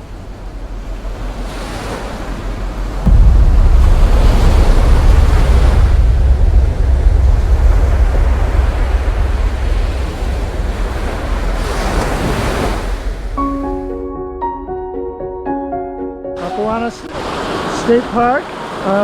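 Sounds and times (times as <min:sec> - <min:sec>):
ocean surf washing onto beach: 0:00.0 - 0:14.1, 0:16.4 - 0:19.0
wind rumbling on microphone: 0:00.0 - 0:14.9.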